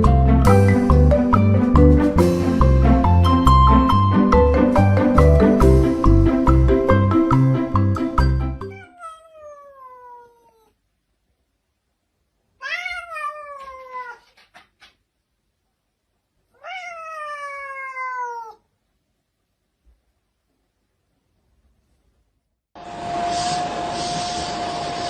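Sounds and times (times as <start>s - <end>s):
cat meowing: 8.6s - 10.8s, 12.6s - 14.6s, 16.5s - 18.7s.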